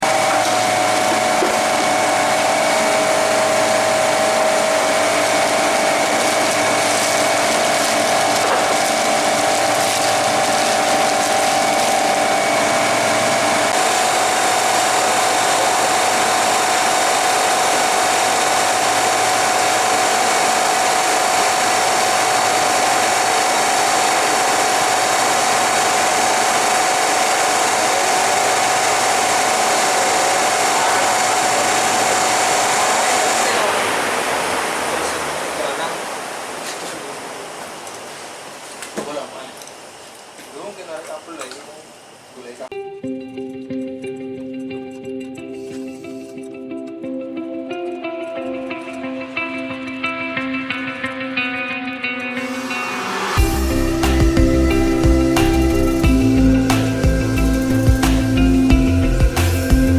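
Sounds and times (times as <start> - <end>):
machinery drone: 0.0 - 42.6, 48.8 - 59.9
steady tones: 48.1 - 59.9.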